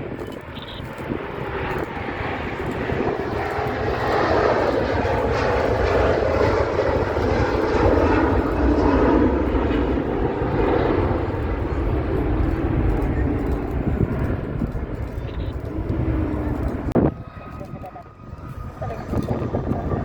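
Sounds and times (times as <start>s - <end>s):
jet airliner engines roaring: 0.0s - 20.0s.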